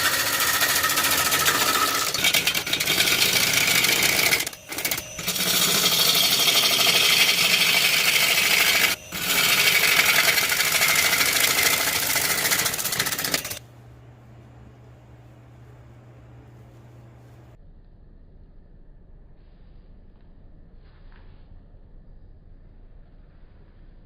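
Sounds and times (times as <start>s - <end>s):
power tool cutting wood: 0.0s - 13.6s
faint low hum: 13.6s - 24.0s.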